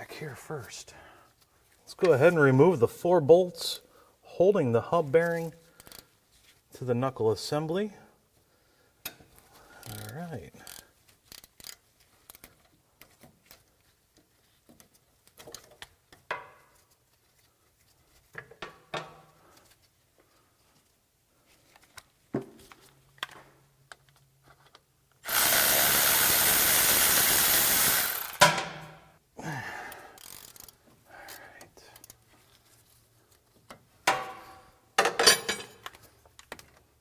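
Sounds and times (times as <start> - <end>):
wrenches and metal parts clinking: 9.7 - 13.2, 34.1 - 36.2
power tool running: 25.2 - 28.4.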